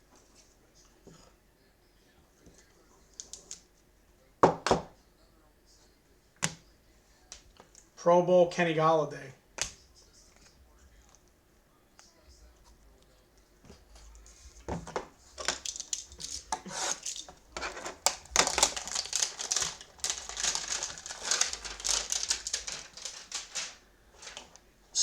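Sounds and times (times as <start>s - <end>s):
card packaging tearing and crinkling: 14.8s - 24.6s.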